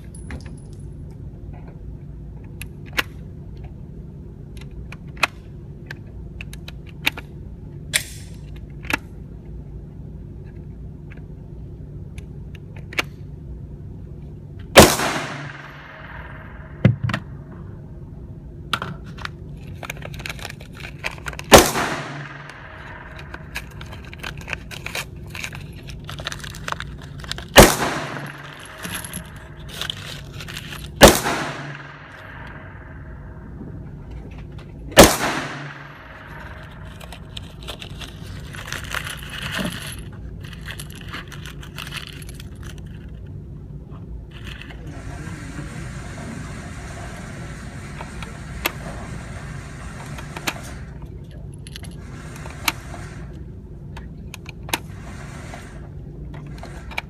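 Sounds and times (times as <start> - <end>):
steady low hum: 0.0 - 57.0
loud gunshots with echo: 14.8 - 16.8, 21.5 - 23.1, 27.6 - 28.7, 31.0 - 33.2, 35.0 - 36.3.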